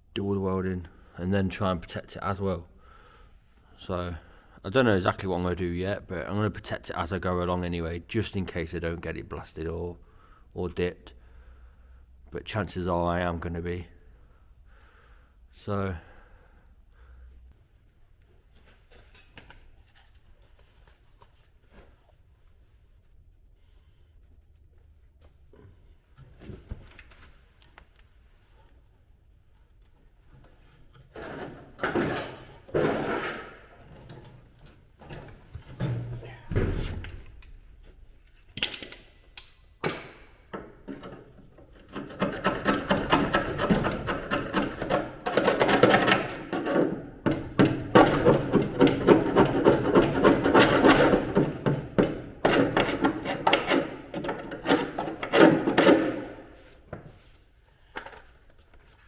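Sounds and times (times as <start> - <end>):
hand tool scraping rusty metal: 30.9 - 34.3, 39.9 - 56.7.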